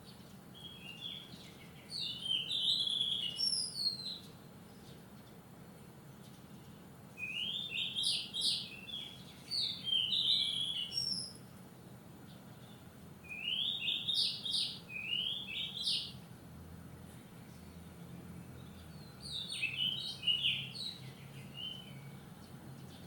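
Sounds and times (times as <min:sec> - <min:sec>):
songbird whistling: 0:00.6 - 0:04.2, 0:07.2 - 0:11.4, 0:13.2 - 0:16.2, 0:19.0 - 0:22.2.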